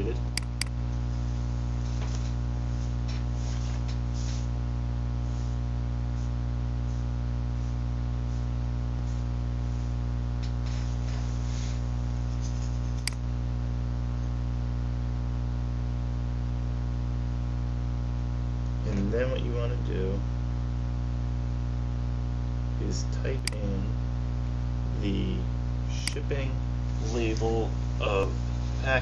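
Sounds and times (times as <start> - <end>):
electrical mains hum: 0.0 - 29.0
sharp click: 0.2 - 0.8, 23.4 - 23.7, 26.0 - 26.2.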